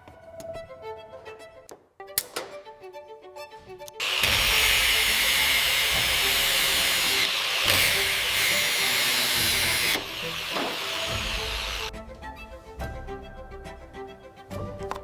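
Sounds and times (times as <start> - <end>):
faint background music: 0.0 - 5.6, 7.7 - 15.0
loud steady hiss: 4.0 - 11.9.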